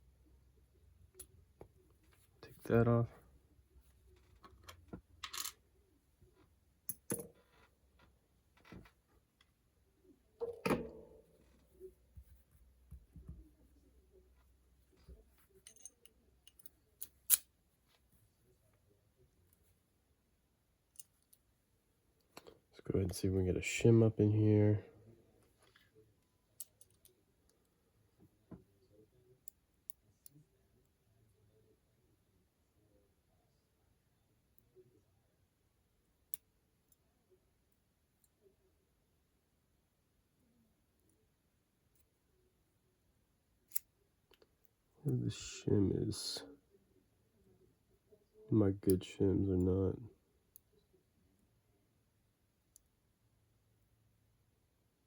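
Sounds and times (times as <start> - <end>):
pliers clicking and scraping metal: 15.5 - 17.5.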